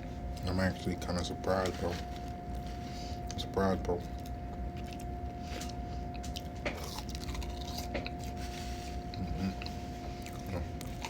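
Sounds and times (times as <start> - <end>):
low hum: 0.0 - 11.0
person chewing: 2.2 - 11.0.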